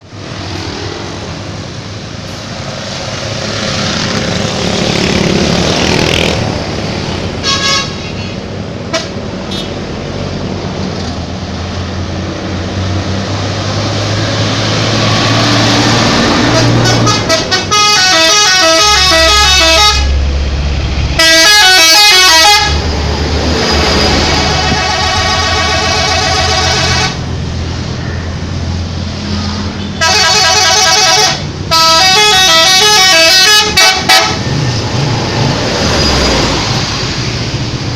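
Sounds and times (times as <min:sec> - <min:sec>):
bus engine rumbling: 0:00.0 - 0:37.9
street noise: 0:00.0 - 0:37.9
multi-note bus horn: 0:07.4 - 0:09.8, 0:16.4 - 0:20.2, 0:21.1 - 0:22.8, 0:24.3 - 0:27.3, 0:29.8 - 0:34.6.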